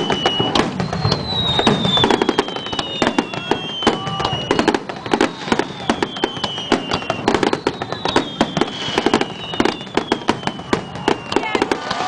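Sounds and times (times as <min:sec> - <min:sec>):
long falling whistles: 0:00.0 - 0:11.7.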